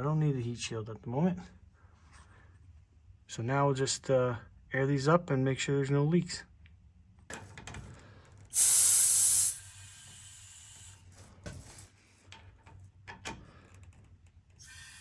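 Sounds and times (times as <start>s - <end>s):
compressed air hissing: 8.5s - 11.1s, 14.6s - 15.0s.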